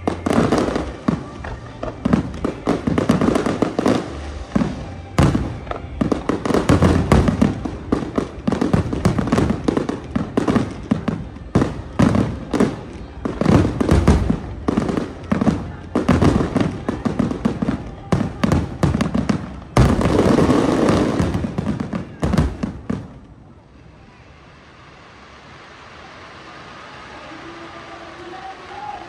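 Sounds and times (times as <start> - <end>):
fireworks bangs and crackling: 0.0 - 29.0.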